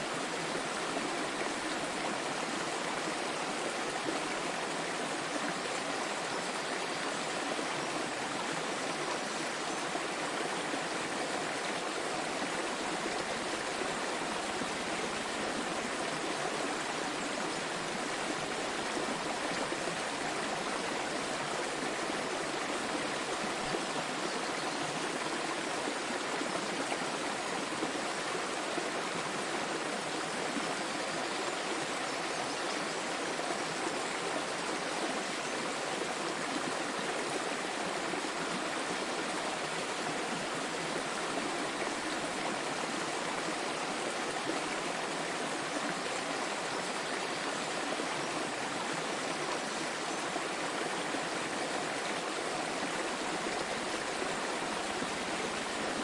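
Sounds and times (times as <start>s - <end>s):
small waterfall rushing: 0.0s - 56.0s.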